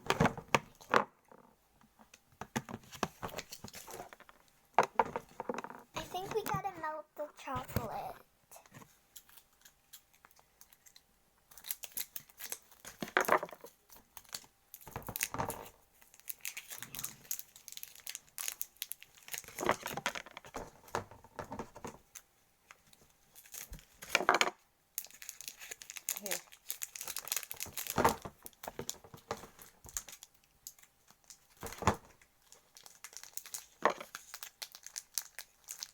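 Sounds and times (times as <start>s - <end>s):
plastic packaging crinkling and tearing: 9.1s - 20.3s, 23.3s - 24.1s, 24.9s - 35.9s.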